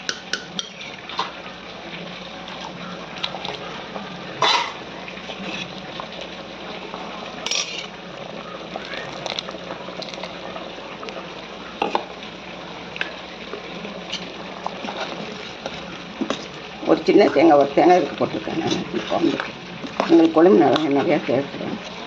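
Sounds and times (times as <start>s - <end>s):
curry simmering hiss: 0.0s - 22.0s
spoon scraping metal pot: 7.5s - 7.9s.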